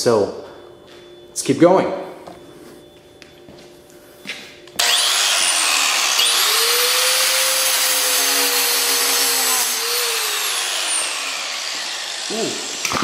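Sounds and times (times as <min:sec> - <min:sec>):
angle grinder grinding: 0:04.8 - 0:13.0.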